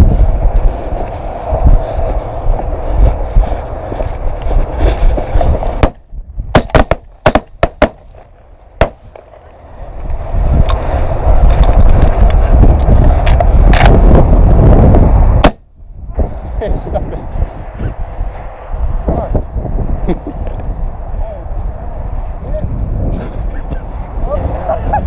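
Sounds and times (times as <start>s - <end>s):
loud low rumbling: 0.0s - 7.3s.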